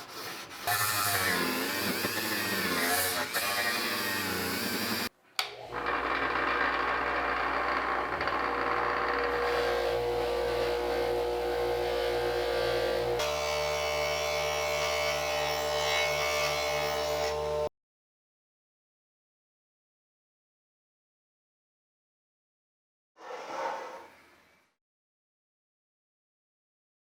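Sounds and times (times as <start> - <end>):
small electric motor running: 5.7 - 17.7.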